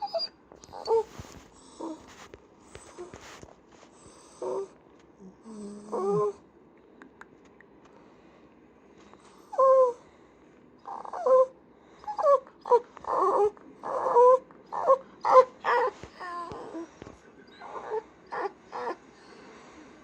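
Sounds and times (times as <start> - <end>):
dog whining and yowling: 0.0 - 1.1, 5.5 - 6.4, 9.5 - 10.0, 10.8 - 16.9, 17.5 - 19.0.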